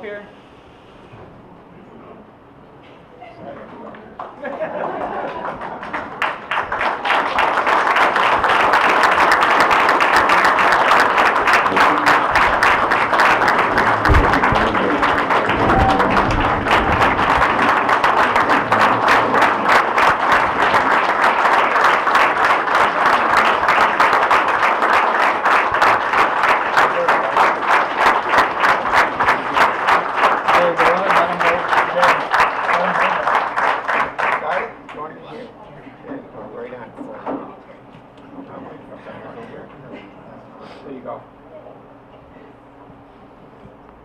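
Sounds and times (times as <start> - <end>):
crowd applauding: 4.2 - 35.0.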